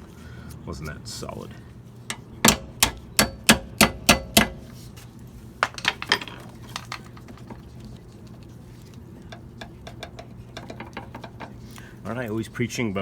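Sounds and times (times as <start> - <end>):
hammer striking metal: 2.1 - 4.6.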